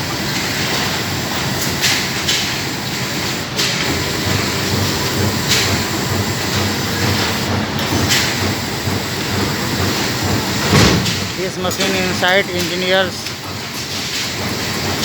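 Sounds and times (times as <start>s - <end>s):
sharp knocks: 10.7s - 11.3s.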